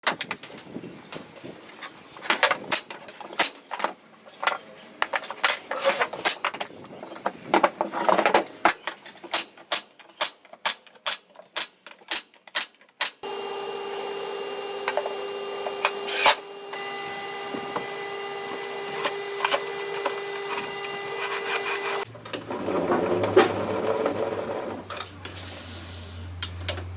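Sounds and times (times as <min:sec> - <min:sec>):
electric power tool humming: 0:13.2 - 0:22.1.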